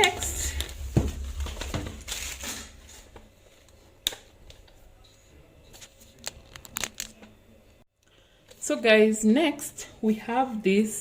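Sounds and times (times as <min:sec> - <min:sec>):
boxes and packaging rustling: 0:00.0 - 0:05.0.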